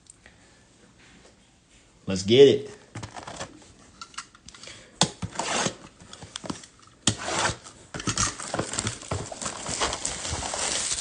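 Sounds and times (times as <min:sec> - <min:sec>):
crinkly handling noise: 0:02.7 - 0:04.5, 0:07.6 - 0:11.0
cardboard rubbing and scraping: 0:05.3 - 0:05.8, 0:07.1 - 0:07.6, 0:08.5 - 0:11.0.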